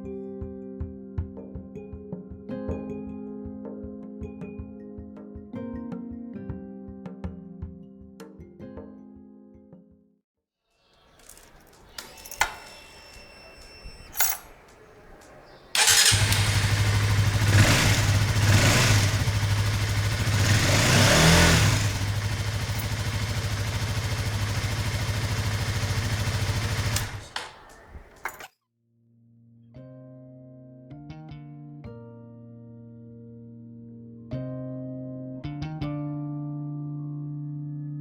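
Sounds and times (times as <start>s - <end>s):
sharp clicks: 11.1s - 18.2s, 25.7s - 28.5s
motorcycle engine starting and idling: 11.1s - 28.5s.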